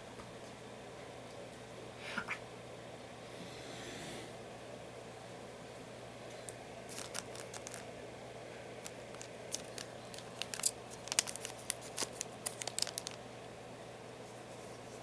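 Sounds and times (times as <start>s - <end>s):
steady low hum: 0.0s - 15.0s
foil pack crinkling and tearing: 6.9s - 7.9s, 8.8s - 13.2s.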